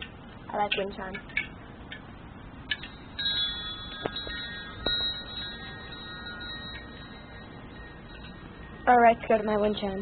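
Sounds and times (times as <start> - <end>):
wind chimes ringing: 2.6 - 10.0.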